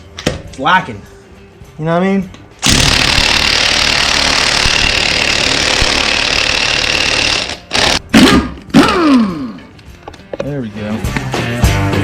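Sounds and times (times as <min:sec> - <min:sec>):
impact wrench hammering: 0:02.6 - 0:08.5.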